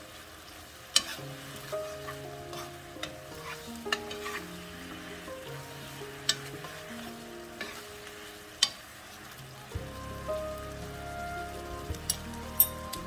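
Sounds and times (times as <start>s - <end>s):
food sizzling in a frying pan: 0.0s - 13.0s
soft background music: 0.0s - 13.0s
utensil clicking against pan: 8.6s - 8.8s.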